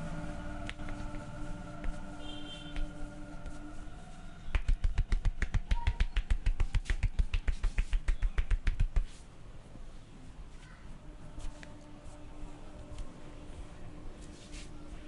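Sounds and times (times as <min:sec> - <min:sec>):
hands slapping on body: 0:00.6 - 0:01.2, 0:01.8 - 0:02.1, 0:02.7 - 0:03.6, 0:04.5 - 0:09.2.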